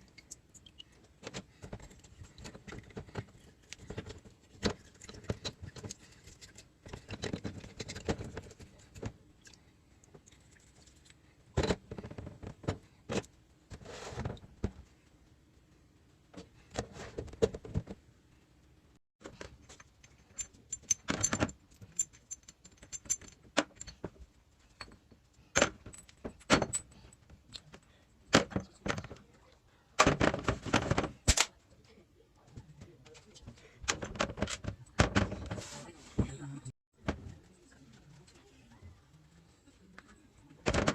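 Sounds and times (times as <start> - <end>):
metal tools clinking and knocking: 19.7 - 24.1
scraping and rustling: 32.8 - 36.5.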